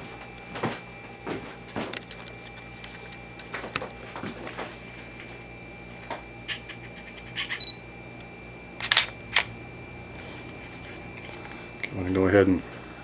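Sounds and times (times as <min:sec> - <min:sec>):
camera autofocus beep: 0:07.4 - 0:07.8
camera light clicks: 0:08.8 - 0:09.5
camera shutter clicks: 0:08.8 - 0:09.5.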